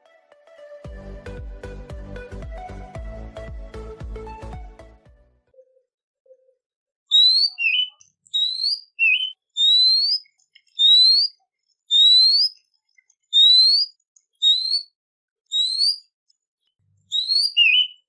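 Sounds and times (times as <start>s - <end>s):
songbird whistling: 7.1s - 12.6s, 13.3s - 16.1s, 17.1s - 18.0s.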